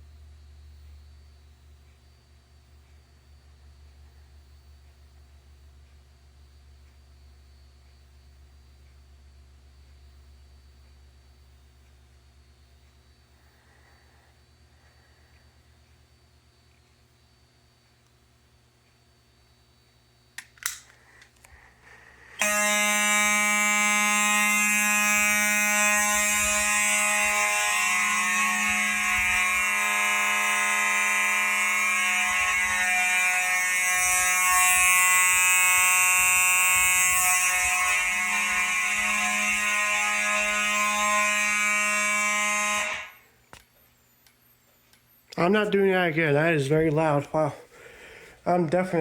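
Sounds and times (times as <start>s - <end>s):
clicks: 20.4s - 21.6s
fire alarm continuous tone: 20.9s - 48.4s.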